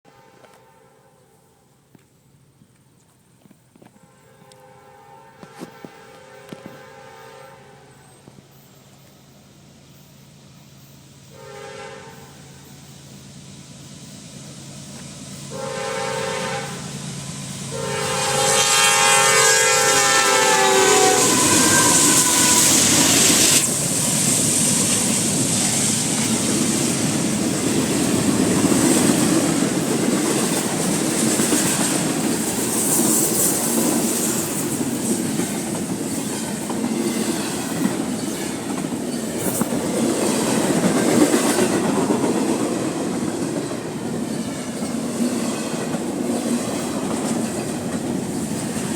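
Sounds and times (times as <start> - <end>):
locomotive air horn blasts: 0.1 - 1.6, 3.9 - 8.1, 11.3 - 12.6, 15.5 - 17.0, 17.7 - 23.7
train wheels clattering on rails: 19.8 - 48.9.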